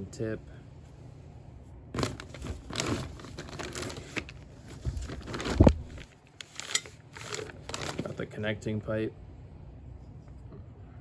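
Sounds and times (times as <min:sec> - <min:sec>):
packaging rustling: 0:02.0 - 0:08.2.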